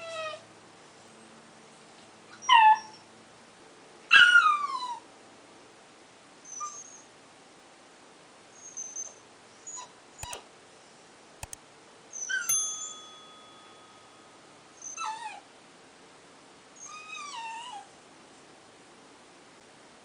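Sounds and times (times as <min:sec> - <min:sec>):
short clicks: 0:10.2 - 0:10.4.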